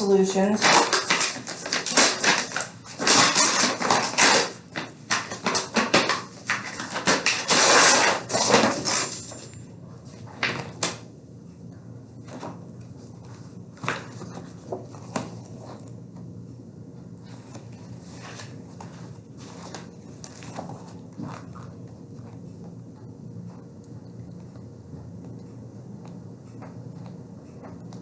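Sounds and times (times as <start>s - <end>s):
paper rustling and crinkling: 0.6s - 8.9s, 17.2s - 21.8s.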